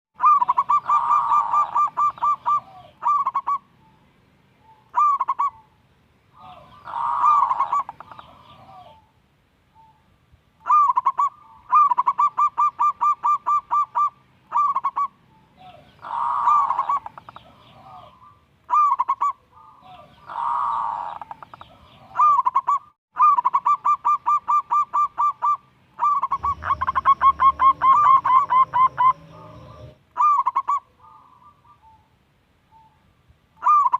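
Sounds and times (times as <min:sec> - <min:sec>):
dove cooing: 0:00.2 - 0:04.0, 0:04.6 - 0:05.7, 0:06.4 - 0:09.1, 0:10.6 - 0:32.1, 0:33.6 - 0:33.9
low rumble: 0:26.2 - 0:30.0.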